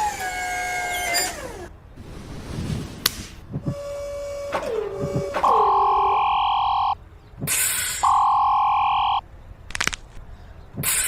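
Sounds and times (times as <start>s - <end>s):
held tone with falling swoops: 4.5s - 7.0s
electronic beep tones: 5.4s - 7.0s, 8.0s - 9.2s.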